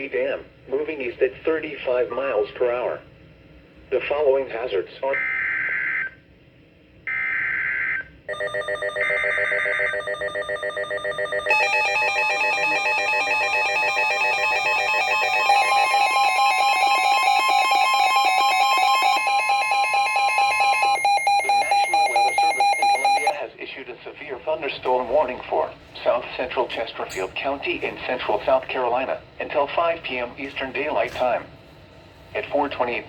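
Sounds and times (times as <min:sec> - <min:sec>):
pulsing alert alarm chord: 0:11.2 - 0:23.4
screechy digital data tones: 0:11.5 - 0:23.4.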